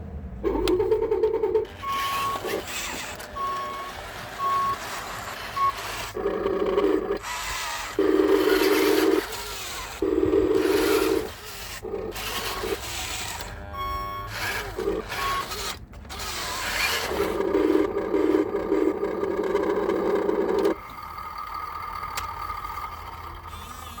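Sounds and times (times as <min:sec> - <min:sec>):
electric motors buzzing: 0:00.4 - 0:24.0
short electronic beeps: 0:01.2 - 0:07.1, 0:13.6 - 0:15.6.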